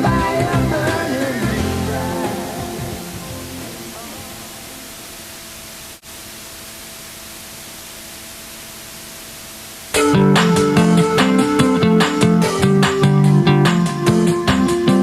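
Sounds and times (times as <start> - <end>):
song with strummed guitar: 0.0 - 4.0, 10.0 - 15.0
static-like hiss: 0.0 - 15.0.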